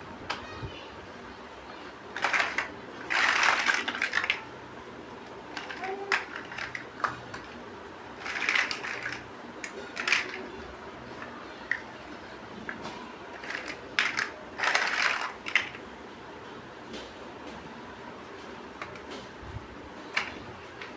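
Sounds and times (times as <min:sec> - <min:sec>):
plastic bricks clicking together: 0:02.2 - 0:04.4, 0:05.5 - 0:07.6, 0:08.2 - 0:10.5, 0:13.4 - 0:15.8, 0:20.1 - 0:20.9.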